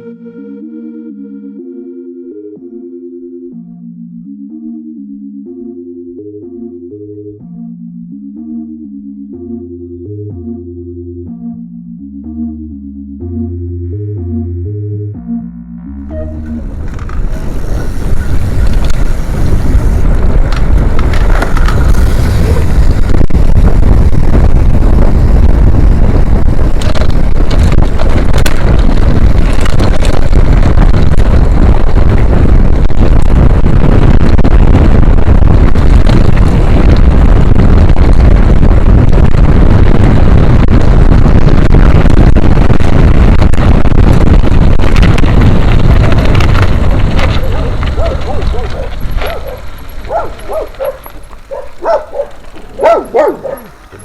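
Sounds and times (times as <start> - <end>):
wind rumble on microphone: 16.0 - 54.0.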